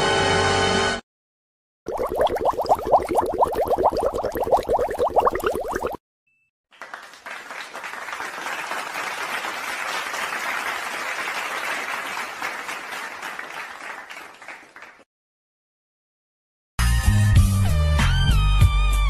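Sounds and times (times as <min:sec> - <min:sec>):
crowd applause: 0:06.7 - 0:15.0.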